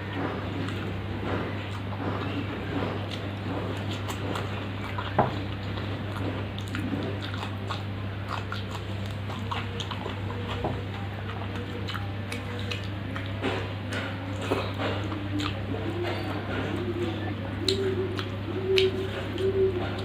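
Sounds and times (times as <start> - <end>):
person chewing food: 0.0 - 20.0
steady low hum: 0.0 - 20.0
mouth clicks: 17.6 - 20.0.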